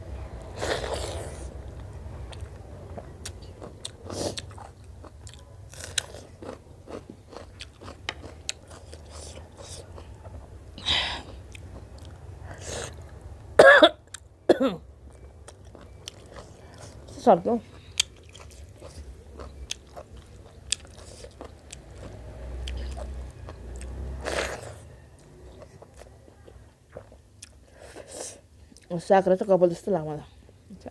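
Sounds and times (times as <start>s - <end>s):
chewing with wet mouth clicks: 1.8s - 10.5s, 11.3s - 12.3s, 14.0s - 14.3s, 15.0s - 27.9s.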